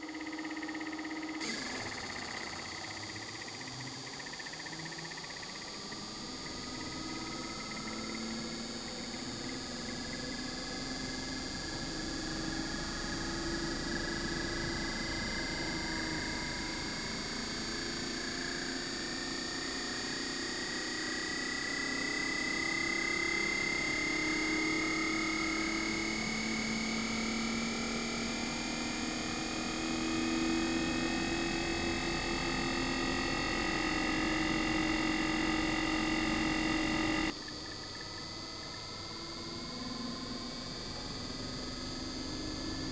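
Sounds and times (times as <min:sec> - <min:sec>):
air conditioner compressor whine: 0:00.0 - 0:42.9
steady high tones: 0:31.4 - 0:37.3.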